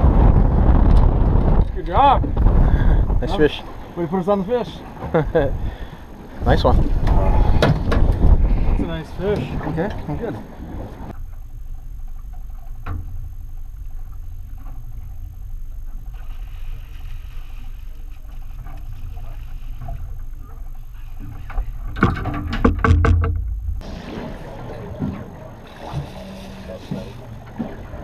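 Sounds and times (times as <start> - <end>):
boat motor rumbling: 0.0 - 28.0
loud knocks and thumps: 21.9 - 23.8.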